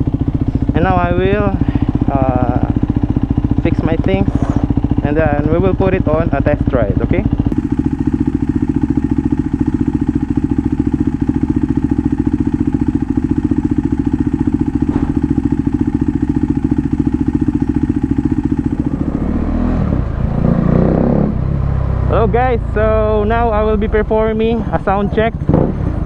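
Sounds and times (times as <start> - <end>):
motorcycle engine idling: 0.0 - 26.0.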